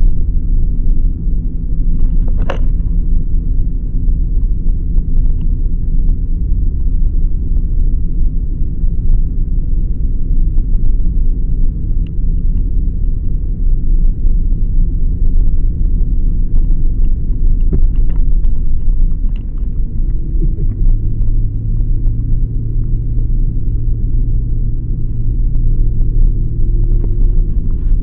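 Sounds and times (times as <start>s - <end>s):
car engine and tyre rumble: 0.0s - 28.0s
light clicks and rattles: 1.9s - 3.1s, 16.6s - 22.3s.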